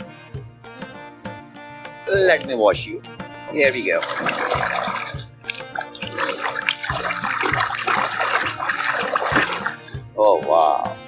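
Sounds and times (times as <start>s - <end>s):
background music with steady beat: 0.0s - 11.0s
water running and splashing: 3.5s - 11.0s.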